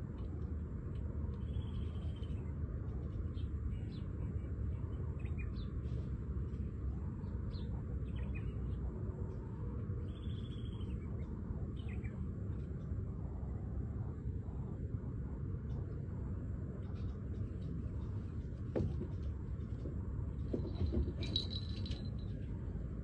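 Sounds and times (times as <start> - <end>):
low rumble: 0.0 - 23.0
small birds chirping: 1.3 - 9.4, 10.0 - 12.8.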